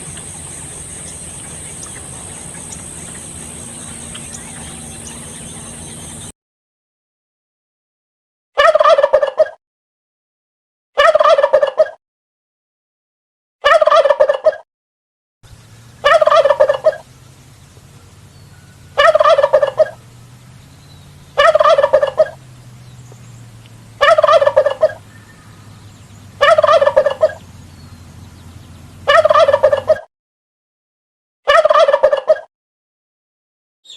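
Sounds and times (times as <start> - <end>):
turkey gobbling: 0.0 - 5.2, 8.6 - 9.6, 11.0 - 12.0, 13.6 - 14.6, 16.0 - 17.1, 18.6 - 20.0, 21.4 - 22.4, 24.0 - 25.5, 26.4 - 27.4, 29.0 - 30.1, 31.5 - 32.5
faint low hum: 0.0 - 6.3.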